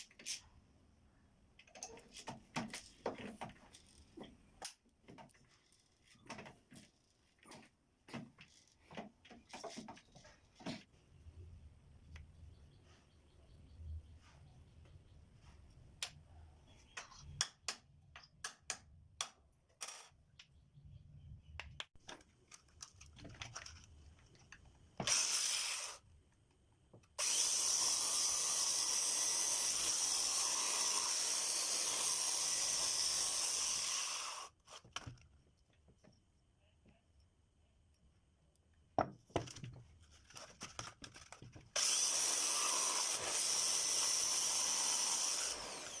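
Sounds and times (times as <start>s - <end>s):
power tool running: 25.0s - 26.0s, 27.2s - 34.6s, 41.8s - 46.0s.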